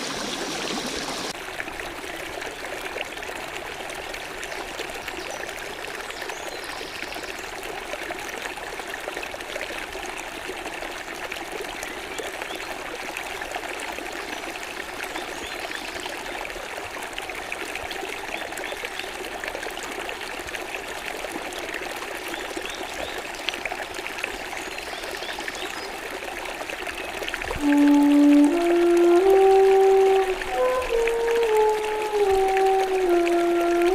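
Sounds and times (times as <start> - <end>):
water trickling and splashing: 0.0 - 33.9.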